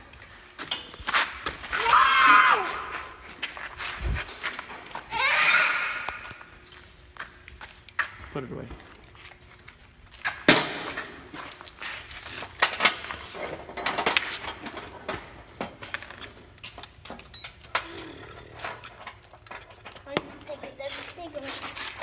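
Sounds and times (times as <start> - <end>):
metal tools clinking and knocking: 10.4 - 22.0.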